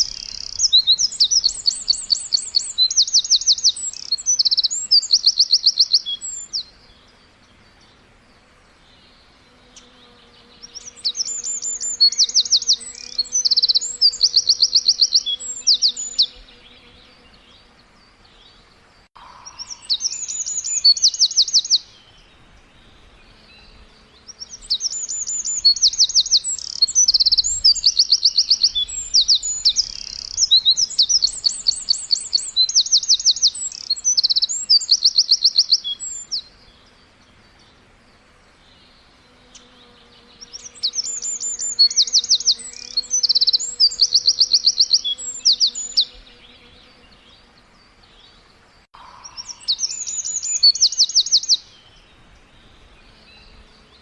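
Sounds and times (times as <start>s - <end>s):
songbird singing trills: 0.0s - 54.0s.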